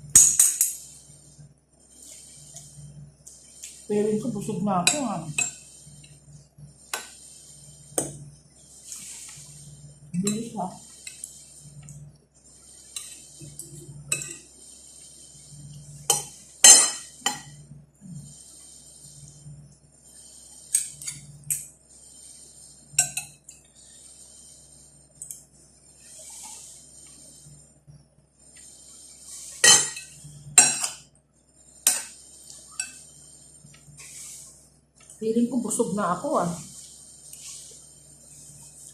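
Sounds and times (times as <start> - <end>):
utensils clinking on a plate: 16.1 - 17.5, 29.6 - 31.0.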